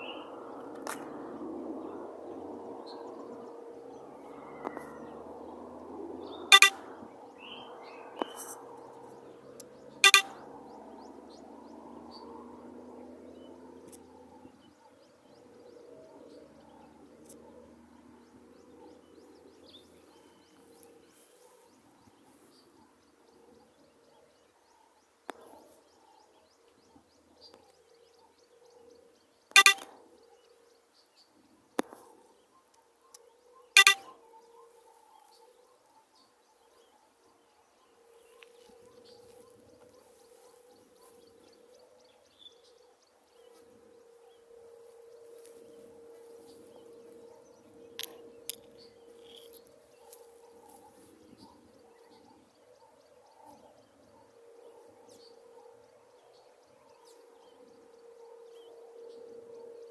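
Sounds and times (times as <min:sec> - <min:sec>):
faint bird chirping: 0:00.0 - 0:59.9
loud short bird calls: 0:10.0 - 0:10.5.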